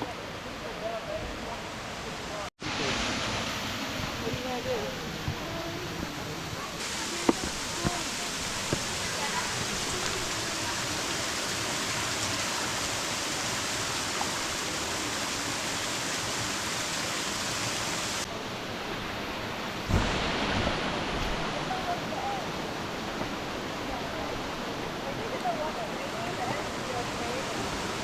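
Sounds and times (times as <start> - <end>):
waterfall rushing: 0.0 - 28.0
low thump: 19.9 - 21.5.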